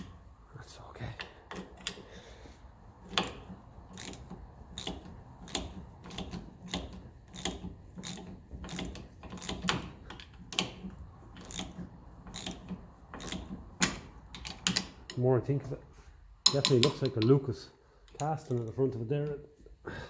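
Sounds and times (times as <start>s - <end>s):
ratchet wrench clicking: 3.0s - 15.0s.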